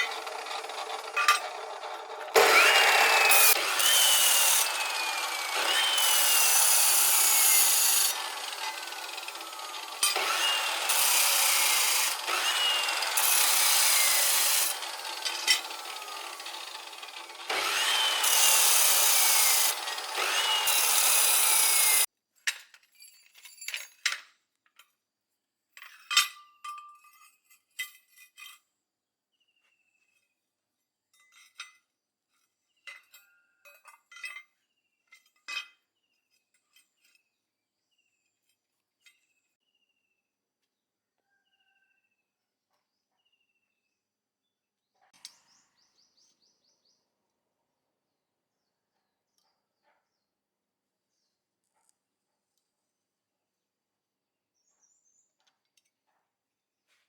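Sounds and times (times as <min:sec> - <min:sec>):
rasping saw-like tool: 0:00.0 - 0:22.1.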